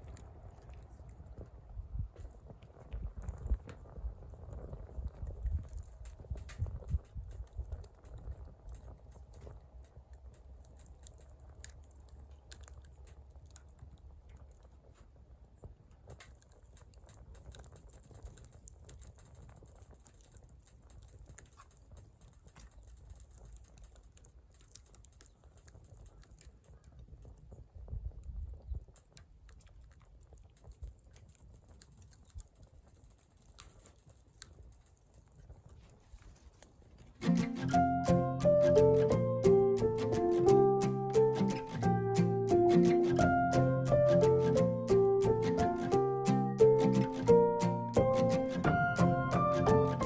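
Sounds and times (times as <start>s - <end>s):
wood fire crackling: 0.0s - 50.0s.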